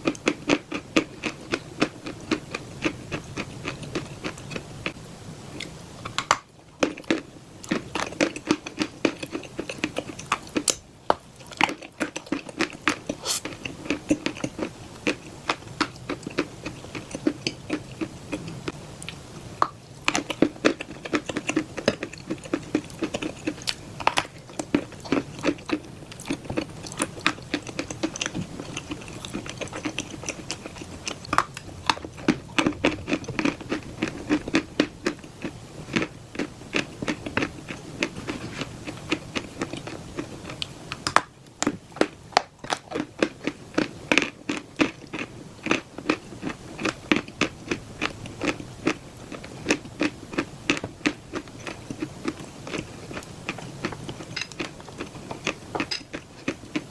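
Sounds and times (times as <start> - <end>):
chalk chewing crunches: 11.4 - 18.6.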